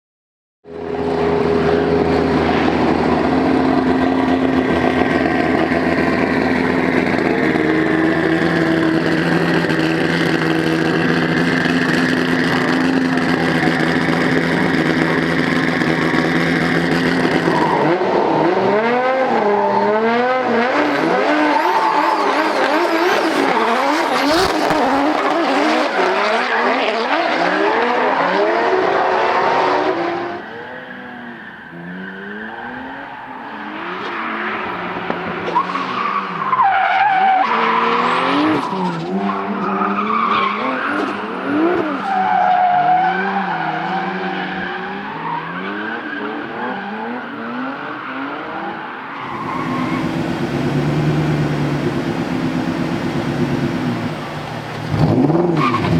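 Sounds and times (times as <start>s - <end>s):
car engines revving high: 0.7s - 55.9s
tyres squealing: 49.2s - 55.9s.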